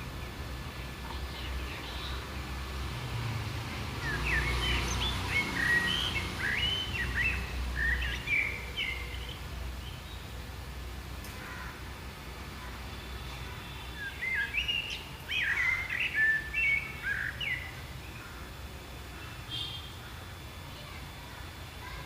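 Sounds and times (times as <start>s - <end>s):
bird chirping: 4.0s - 10.3s, 13.6s - 18.4s.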